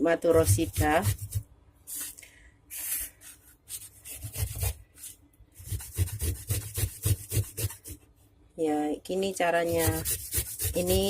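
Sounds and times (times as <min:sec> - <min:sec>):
ginger grated on a grater: 0:00.2 - 0:01.4, 0:05.6 - 0:08.0, 0:09.5 - 0:11.0.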